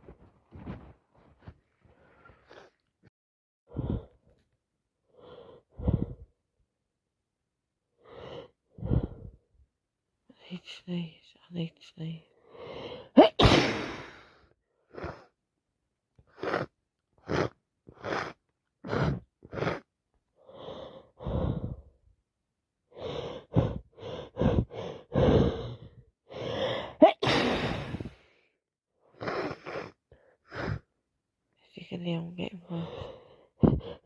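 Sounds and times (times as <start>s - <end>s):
woman gasping breaths: 5.2s - 6.3s, 12.4s - 13.2s, 20.4s - 22.0s, 22.9s - 28.4s
woman sneezing: 13.2s - 14.2s, 27.0s - 28.1s.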